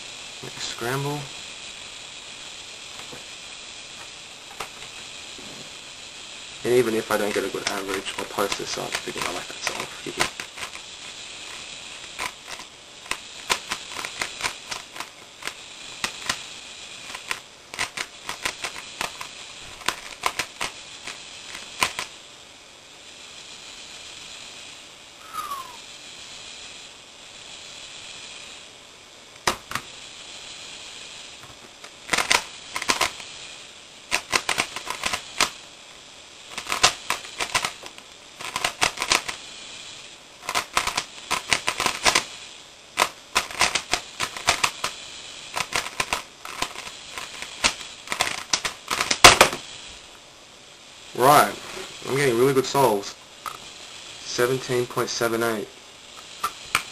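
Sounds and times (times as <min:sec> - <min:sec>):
plastic puzzle cube clicking: 0:12.2 - 0:16.4, 0:17.1 - 0:22.1, 0:32.1 - 0:33.2, 0:34.1 - 0:35.5, 0:36.5 - 0:39.4, 0:40.4 - 0:42.2, 0:43.0 - 0:44.9, 0:45.6 - 0:49.6.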